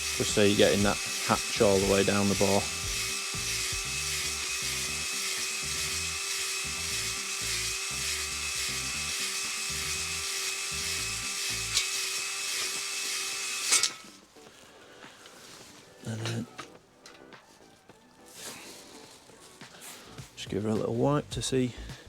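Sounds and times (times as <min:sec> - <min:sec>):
rhythmic low rumble: 0:00.0 - 0:05.1
drill stopping with sharp clack: 0:00.0 - 0:14.2
electric drill running: 0:00.0 - 0:14.2
hone stones scraping bore: 0:00.0 - 0:22.0.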